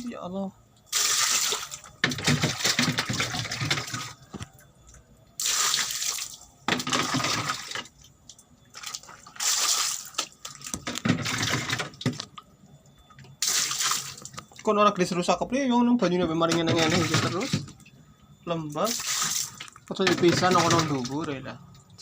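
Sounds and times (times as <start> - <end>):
water running and splashing: 0.9 - 4.2, 18.9 - 21.2.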